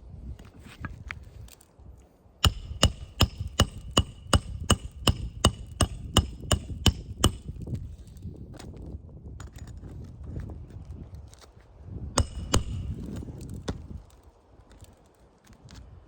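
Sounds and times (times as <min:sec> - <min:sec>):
hammer blows on nail: 0:02.4 - 0:07.7, 0:12.2 - 0:13.2.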